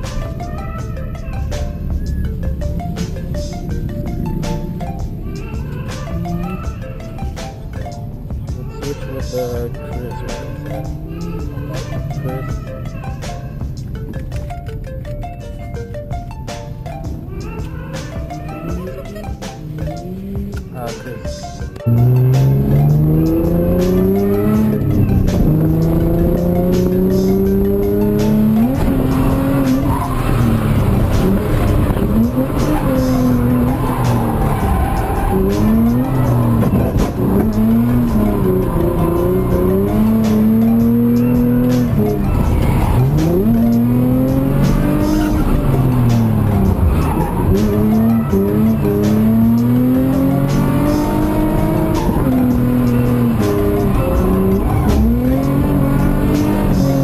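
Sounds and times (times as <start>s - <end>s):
car engine revving: 16.8s - 57.0s
tyres squealing: 17.3s - 57.0s.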